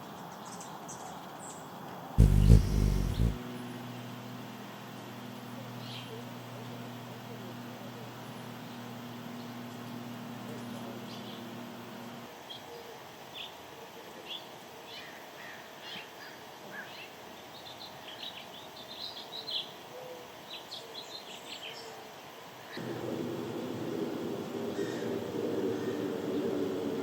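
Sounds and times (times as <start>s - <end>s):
low steady hum: 2.2s - 3.4s
sparrows chirping: 2.2s - 3.4s.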